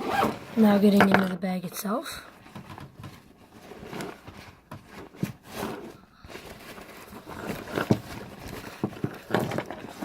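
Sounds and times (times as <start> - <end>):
fabric rustling: 0.0 - 0.9, 2.3 - 10.0
items knocking inside bag: 6.5 - 10.0.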